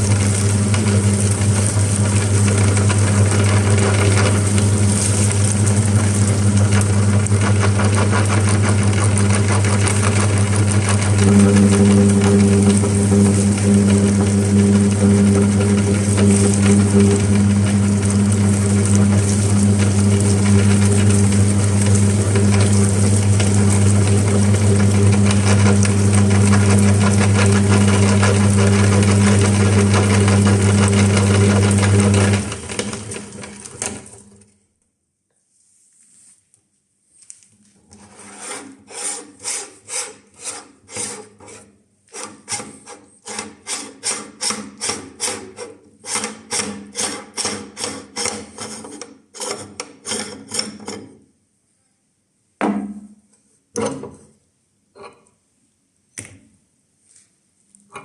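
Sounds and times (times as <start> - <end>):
pepper crackling in grinder: 0.0 - 34.3
meat grinder motor humming: 0.0 - 34.5.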